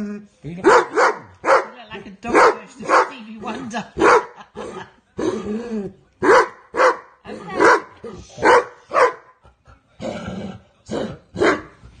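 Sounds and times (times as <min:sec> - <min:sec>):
dog barking: 0:00.6 - 0:03.2, 0:04.0 - 0:04.4, 0:06.2 - 0:09.4, 0:11.4 - 0:11.8.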